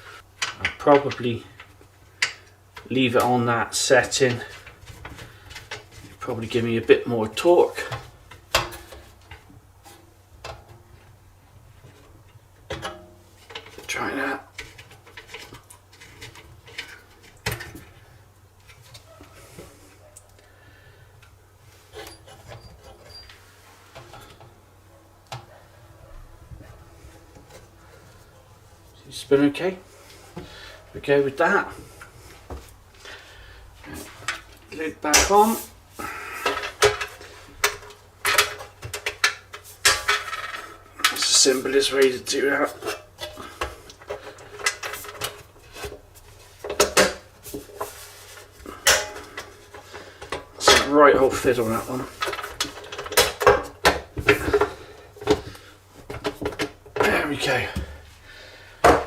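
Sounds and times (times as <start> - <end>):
faint squeaks: 21.8 - 23.7.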